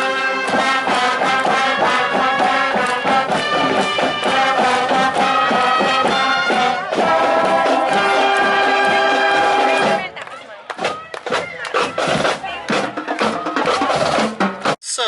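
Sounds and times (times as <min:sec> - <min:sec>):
brass melody: 0:00.0 - 0:10.2
steady drum beat: 0:00.0 - 0:15.0.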